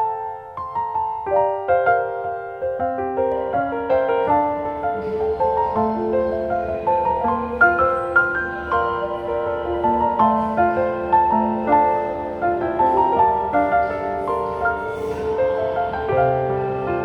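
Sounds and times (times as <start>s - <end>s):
soft piano melody: 0.0s - 17.0s.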